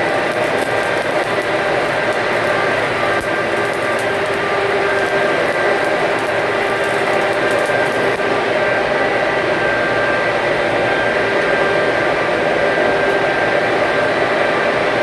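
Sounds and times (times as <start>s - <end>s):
welding arc hissing: 0.0s - 10.0s
faint steady tones: 0.0s - 15.0s.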